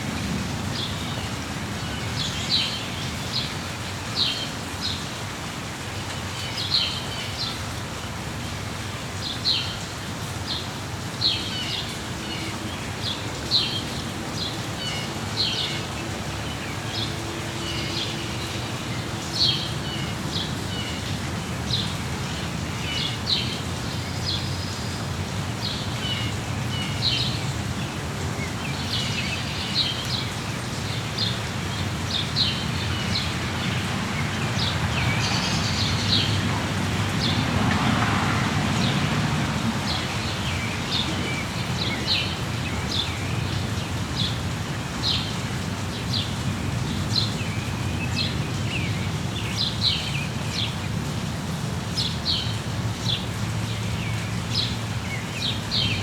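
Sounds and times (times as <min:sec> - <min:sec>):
rain falling: 0:00.0 - 0:56.0
small birds chirping: 0:39.9 - 0:51.0.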